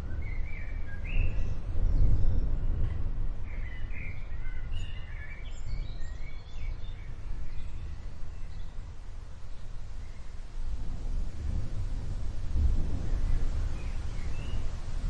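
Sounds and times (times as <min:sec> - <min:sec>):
distant thunder rumble: 0:09.4 - 0:15.0.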